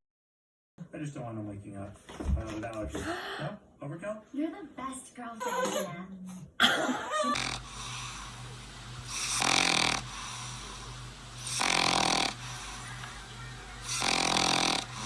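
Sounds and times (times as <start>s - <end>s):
low steady hum: 4.8s - 11.6s
pet snoring: 7.2s - 13.0s, 13.8s - 15.0s.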